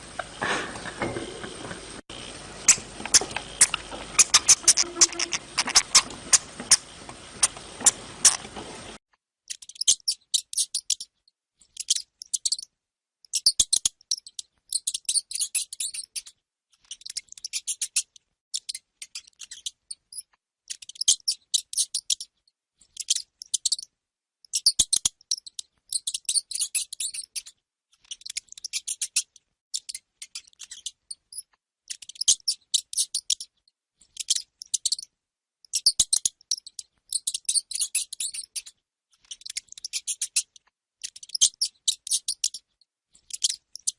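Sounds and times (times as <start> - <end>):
hamster squeaking: 2.6 - 8.5, 13.3 - 23.9, 24.5 - 33.5, 35.7 - 43.9.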